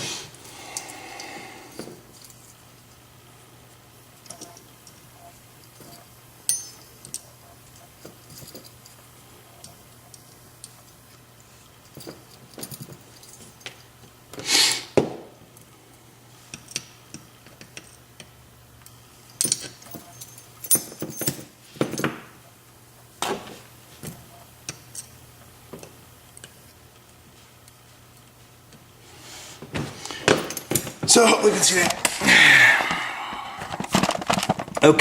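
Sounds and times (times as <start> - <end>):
metal lock parts clinking: 4.2 - 9.0, 19.3 - 22.1, 30.2 - 32.0.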